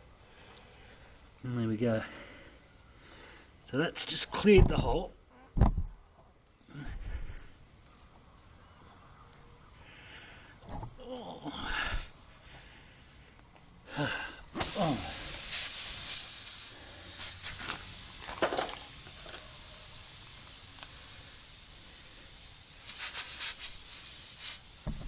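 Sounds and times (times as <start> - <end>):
air hissing out of tyre: 0.0 - 3.6, 11.6 - 25.0.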